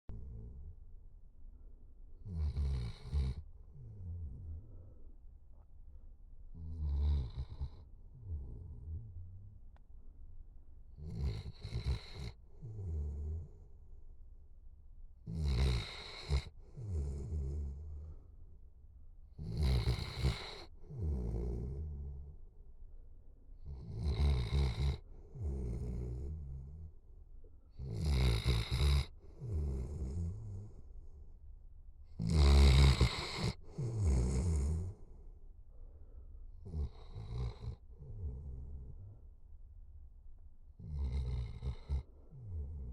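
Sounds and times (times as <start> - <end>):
dog snoring: 0.1 - 0.8, 2.2 - 5.7, 6.5 - 9.5, 11.0 - 13.7, 15.3 - 18.2, 19.4 - 22.4, 23.6 - 27.0, 27.7 - 31.2, 32.1 - 35.3, 36.6 - 39.2, 40.8 - 42.9.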